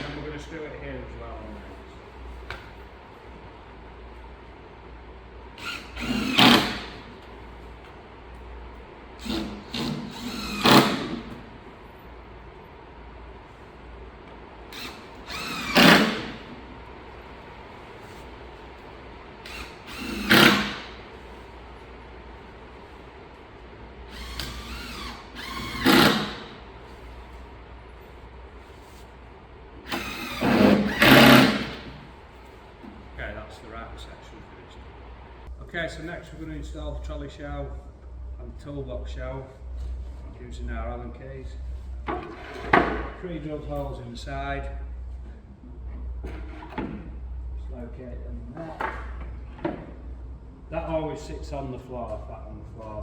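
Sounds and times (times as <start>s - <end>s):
cordless drill driving screws: 5.6s - 7.0s, 9.2s - 11.4s, 14.7s - 16.5s, 19.4s - 21.0s, 24.1s - 26.6s, 29.9s - 31.9s.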